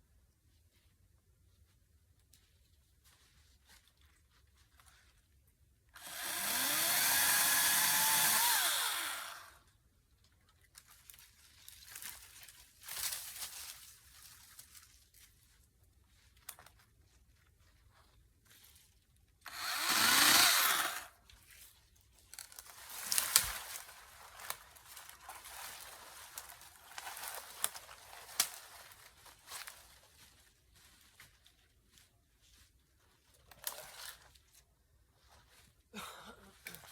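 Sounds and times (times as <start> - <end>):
electric chainsaw running: 6.0 - 9.6, 19.5 - 21.1.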